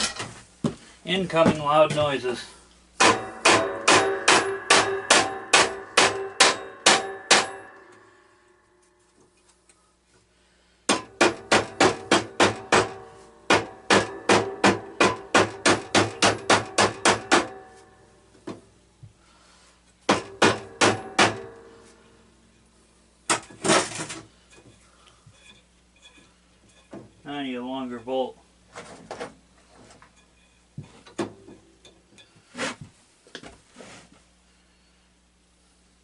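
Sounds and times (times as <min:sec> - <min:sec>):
hammer on metal: 0:03.0 - 0:08.3, 0:10.9 - 0:18.0, 0:20.1 - 0:22.0.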